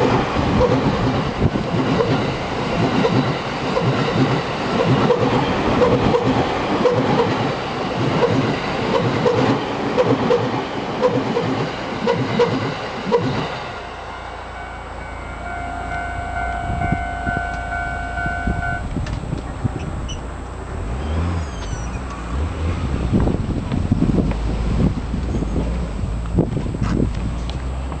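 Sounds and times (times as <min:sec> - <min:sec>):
train wheels clattering over rails: 0:00.0 - 0:14.0
steady tone: 0:11.4 - 0:21.0.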